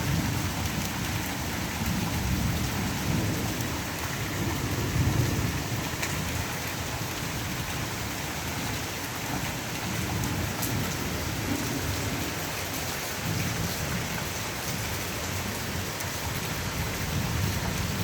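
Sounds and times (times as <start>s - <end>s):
low rumble of thunder: 0.0s - 8.0s
steady rain: 0.0s - 18.0s.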